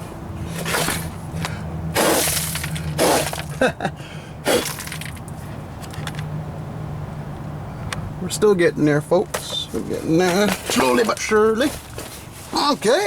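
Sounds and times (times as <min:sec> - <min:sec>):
person crawling on ground scraping: 0:00.5 - 0:03.6, 0:09.4 - 0:13.0.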